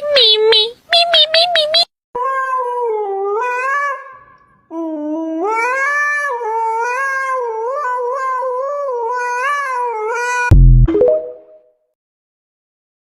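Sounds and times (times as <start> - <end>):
cat yowling: 2.2 - 4.4, 5.3 - 10.5.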